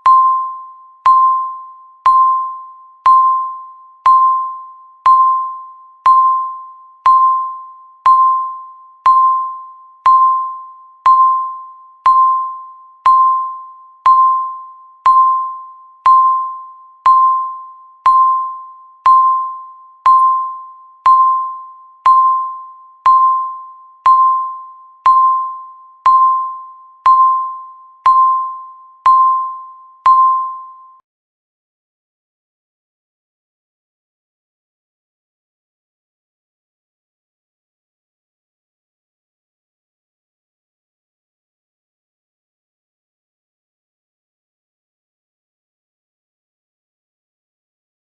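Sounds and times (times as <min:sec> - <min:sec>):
timer beeping: 0:00.0 - 0:31.0.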